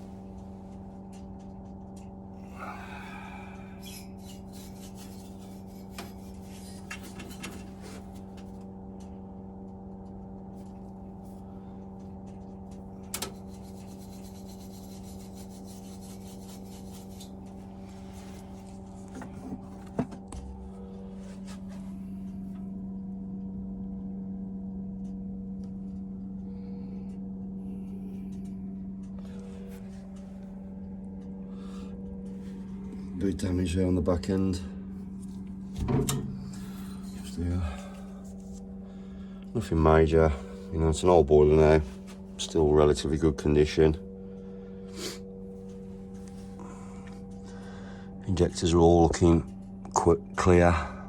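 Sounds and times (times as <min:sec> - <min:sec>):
low electrical hum: 0:00.0 - 0:51.0
metal parts scraping: 0:03.8 - 0:08.1.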